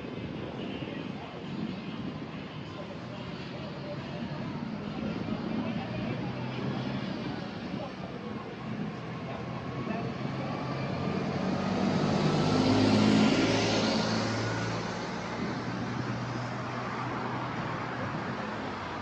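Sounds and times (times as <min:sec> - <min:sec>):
steady traffic noise: 0:00.0 - 0:19.0
vehicle passing: 0:09.4 - 0:19.0.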